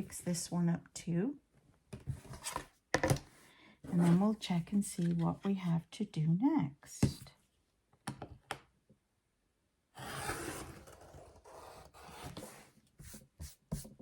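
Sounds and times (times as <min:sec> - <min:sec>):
taps and handling noise: 0:08.0 - 0:08.7.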